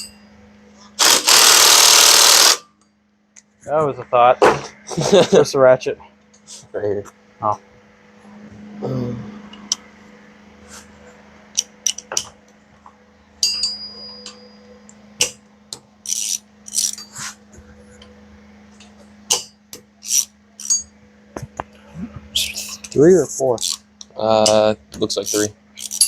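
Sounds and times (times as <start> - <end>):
steady low hum: 0.0 - 26.0
ratcheting bursts: 1.0 - 2.6
metal clicks of ratchet and sockets: 11.6 - 12.3, 16.1 - 17.0, 25.3 - 26.0.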